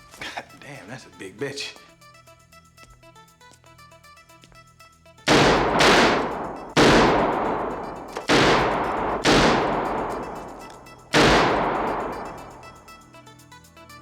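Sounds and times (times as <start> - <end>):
heavy pistol shots ringing: 5.3 - 13.0.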